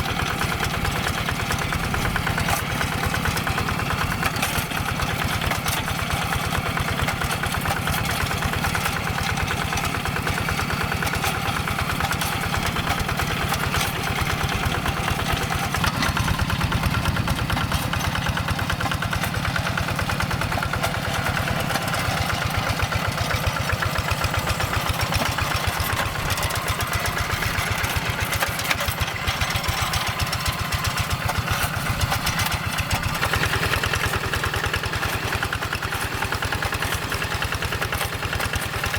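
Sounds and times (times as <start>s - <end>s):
tractor engine chugging: 0.0s - 38.9s.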